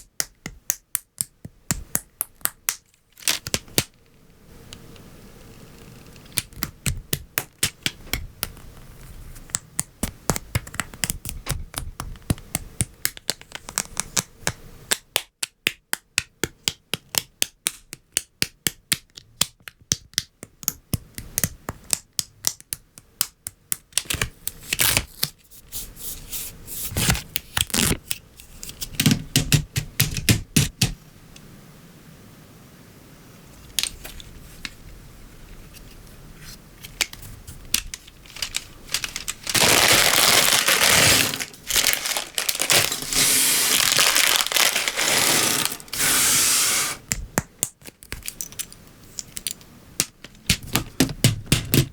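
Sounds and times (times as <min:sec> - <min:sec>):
plastic parts clicking and snapping: 0:36.8 - 0:43.0.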